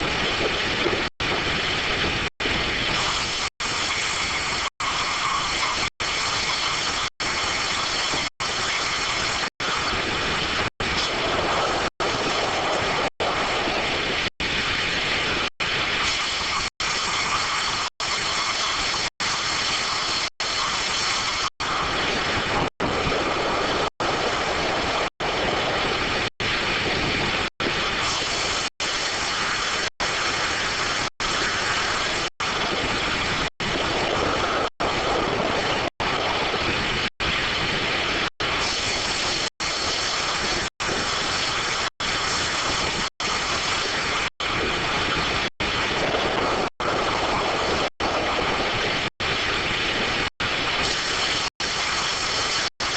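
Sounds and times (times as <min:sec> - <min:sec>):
circular sawmill running: 0:00.0 - 0:33.4.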